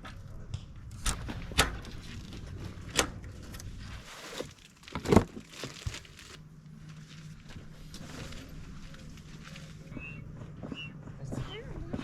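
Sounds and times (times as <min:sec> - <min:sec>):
material crinkling and rustling: 0:01.2 - 0:10.6.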